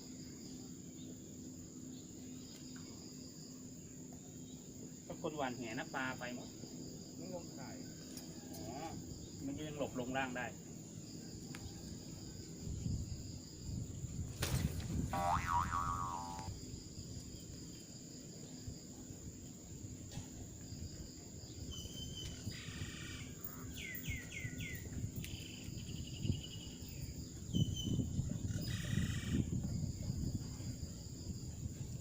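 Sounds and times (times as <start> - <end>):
insect trilling: 4.4 - 10.6, 15.1 - 16.6, 21.8 - 29.7
bird calls: 15.2 - 16.5, 27.6 - 29.5.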